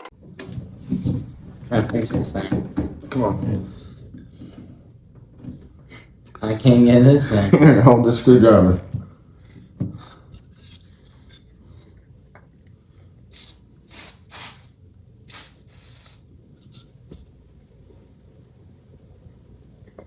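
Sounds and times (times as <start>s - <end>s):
aerosol spray hissing: 13.3s - 14.7s, 15.3s - 16.3s.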